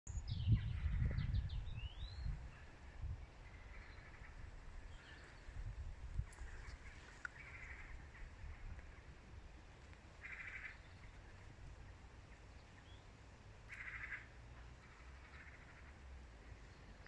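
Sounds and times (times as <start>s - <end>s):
wind rumble on microphone: 0.1s - 11.9s
birds chirping: 0.1s - 17.0s.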